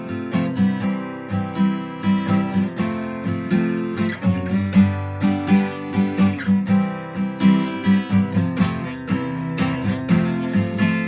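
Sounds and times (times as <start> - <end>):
acoustic guitar strumming: 0.0 - 11.0.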